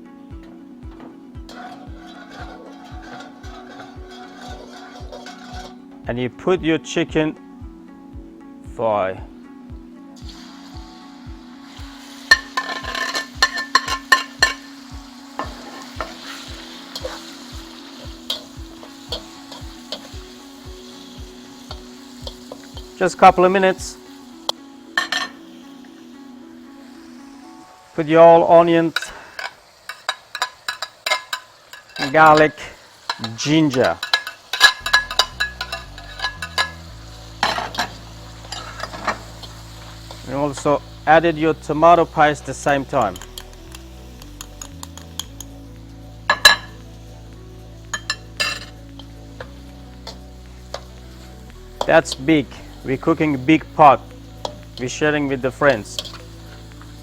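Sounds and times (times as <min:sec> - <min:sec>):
chicken sizzling in hot oil: 0:00.8 - 0:06.2, 0:10.2 - 0:57.0
metal utensil clanking on pot: 0:01.5 - 0:05.9, 0:12.3 - 0:14.7, 0:29.0 - 0:36.8, 0:37.4 - 0:39.2.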